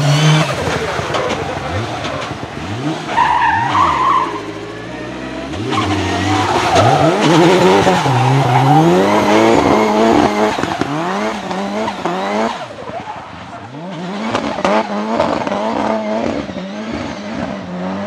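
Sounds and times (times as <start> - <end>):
turbocharged engine revving: 0.0 - 18.0
tyres squealing: 3.0 - 13.9.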